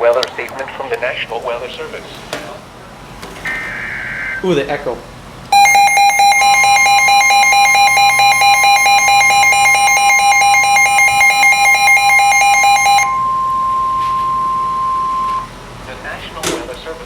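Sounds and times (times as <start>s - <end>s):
rapid electronic alarm beeps: 3.4s - 4.5s, 5.5s - 15.6s
steady warning alarm tone: 3.4s - 4.5s, 5.5s - 15.9s.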